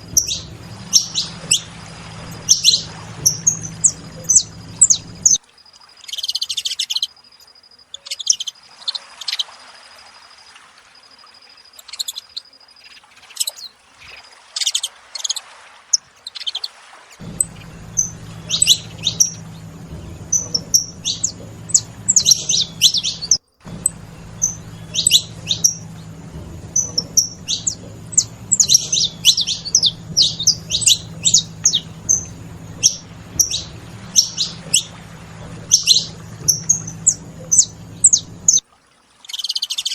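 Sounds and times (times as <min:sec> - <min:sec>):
faint low hum: 0:00.0 - 0:05.4, 0:17.2 - 0:38.6
finches chirping: 0:00.0 - 0:05.4, 0:16.2 - 0:38.6.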